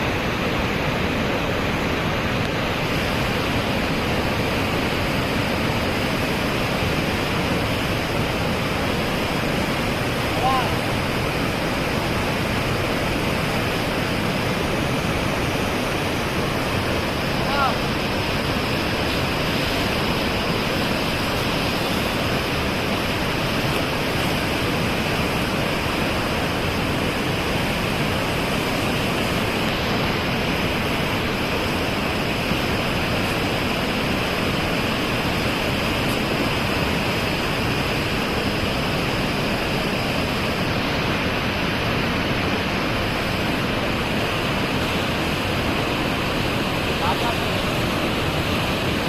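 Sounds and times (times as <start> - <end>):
floodwater rushing: 0.0 - 49.0.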